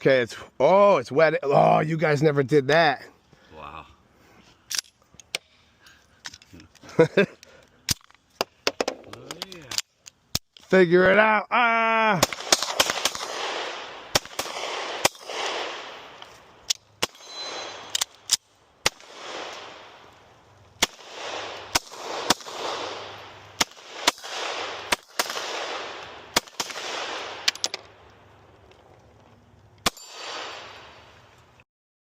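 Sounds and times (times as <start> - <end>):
gunshots with rolling echo: 12.2 - 16.2, 17.0 - 20.2, 20.8 - 28.0, 29.8 - 31.2.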